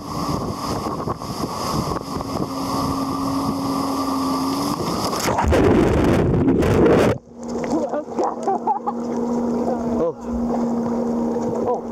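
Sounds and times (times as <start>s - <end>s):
wind on microphone: 0.0s - 7.4s
speedboat engine running: 0.0s - 11.9s
water noise: 0.0s - 11.9s.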